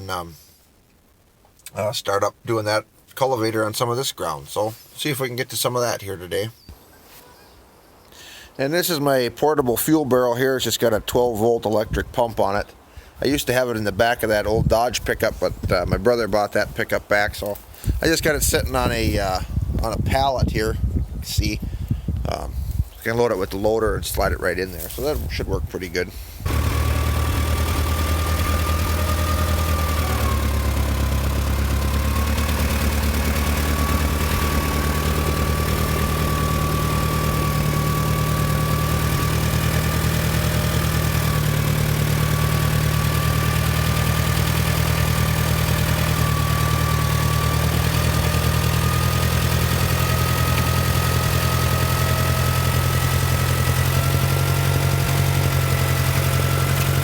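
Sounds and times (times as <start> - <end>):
tractor engine running: 26.4 - 57.0
thin rising whine: 26.5 - 49.7.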